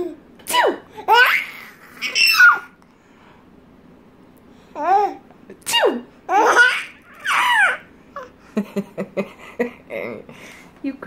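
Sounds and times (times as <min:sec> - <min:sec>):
baby laughing: 0:01.0 - 0:02.8, 0:06.3 - 0:08.3.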